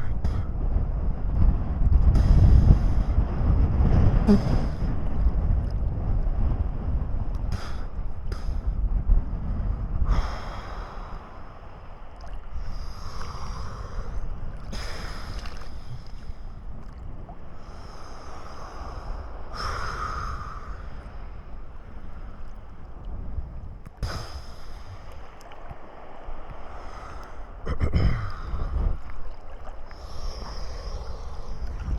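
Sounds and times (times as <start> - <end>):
rushing swell of sea: 0.0 - 31.9
wind buffeting microphone: 0.0 - 31.9.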